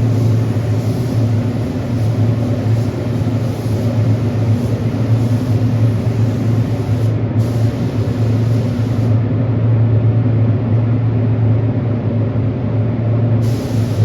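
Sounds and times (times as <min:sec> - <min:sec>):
spray gun hissing: 0:00.0 - 0:09.2, 0:13.4 - 0:14.0
steady machine hum: 0:00.0 - 0:14.0.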